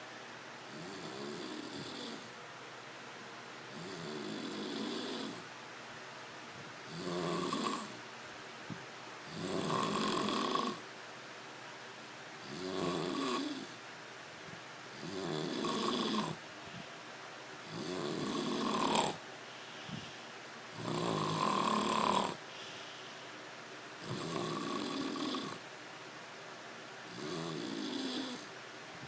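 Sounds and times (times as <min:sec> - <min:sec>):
person snoring: 0:00.7 - 0:02.3, 0:03.7 - 0:05.4, 0:06.9 - 0:08.0, 0:09.3 - 0:10.8, 0:12.4 - 0:13.8, 0:15.0 - 0:16.4, 0:17.6 - 0:23.0, 0:24.0 - 0:25.6, 0:27.1 - 0:28.5.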